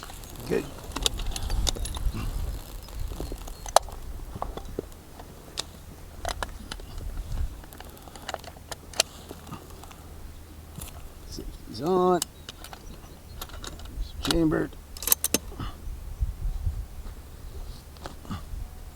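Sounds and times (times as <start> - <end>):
clicks and knocks handling rifle: 0.0 - 10.0, 12.1 - 15.5
steady low rumble: 0.0 - 18.9.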